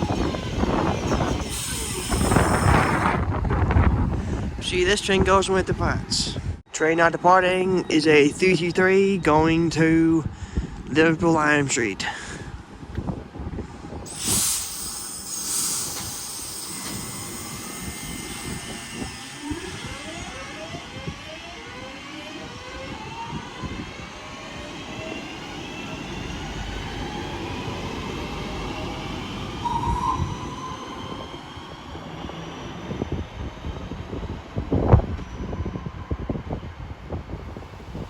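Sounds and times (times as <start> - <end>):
electric train motors whining: 0.0 - 3.2, 14.1 - 33.1.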